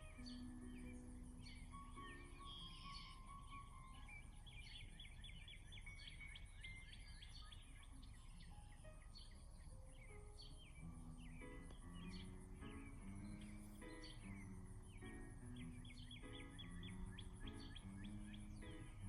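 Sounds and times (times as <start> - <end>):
small birds chirping: 0.0 - 19.0
low background rumble: 8.1 - 19.0.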